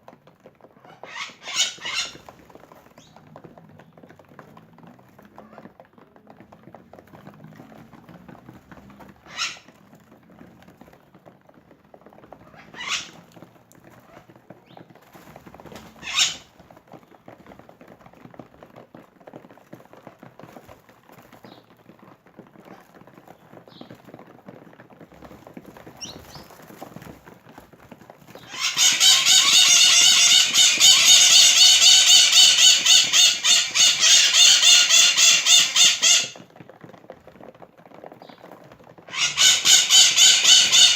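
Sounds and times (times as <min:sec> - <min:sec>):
birds calling: 0:00.9 - 0:03.2, 0:08.7 - 0:09.8, 0:12.3 - 0:13.4, 0:14.0 - 0:16.6, 0:25.8 - 0:27.1, 0:28.3 - 0:36.4, 0:39.1 - 0:40.9.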